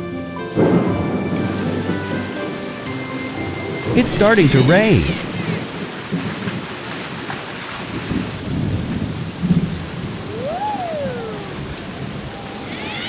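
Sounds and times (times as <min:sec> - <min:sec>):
steady rain: 0:00.6 - 0:12.7.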